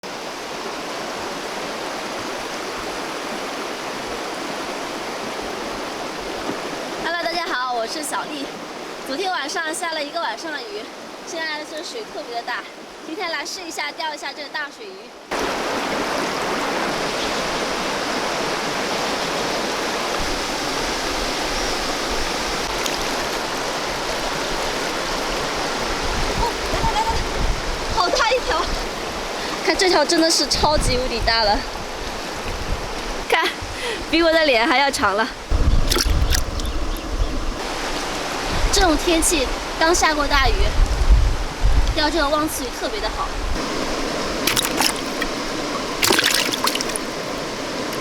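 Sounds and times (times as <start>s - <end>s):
fast-flowing water rushing: 0.0s - 40.8s, 41.4s - 48.0s.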